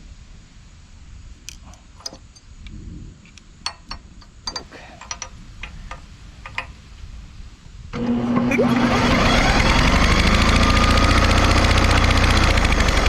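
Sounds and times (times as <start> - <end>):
metal parts clicking and tapping: 1.5 - 2.6, 3.3 - 6.8.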